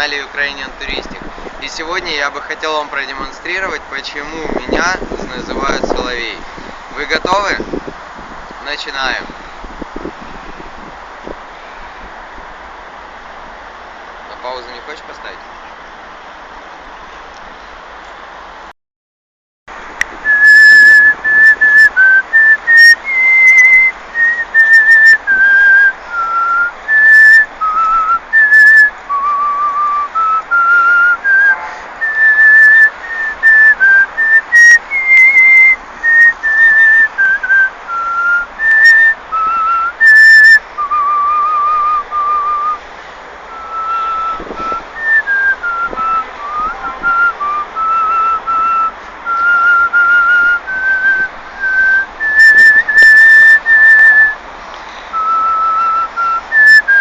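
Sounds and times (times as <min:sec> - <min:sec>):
man whistling a tune: 0:20.3 - 0:42.8, 0:43.5 - 0:54.4, 0:55.1 - 0:57.0.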